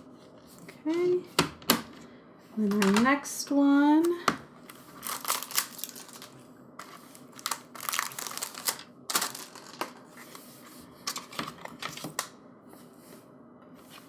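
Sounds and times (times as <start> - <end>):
shrink-wrap crinkling: 4.6 - 10.0.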